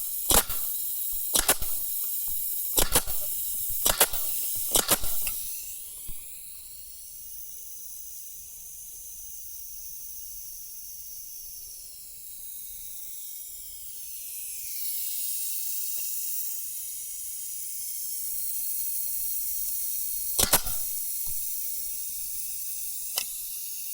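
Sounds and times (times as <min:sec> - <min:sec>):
nailer firing snaps: 0:00.0 - 0:06.3, 0:20.3 - 0:21.7
compressed air hissing: 0:00.0 - 0:07.1, 0:18.5 - 0:23.9.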